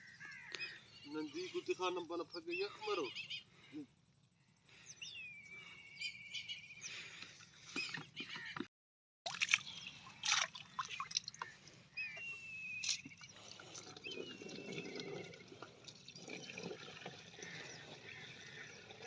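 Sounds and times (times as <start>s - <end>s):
water trickling and sloshing: 9.3s - 19.0s.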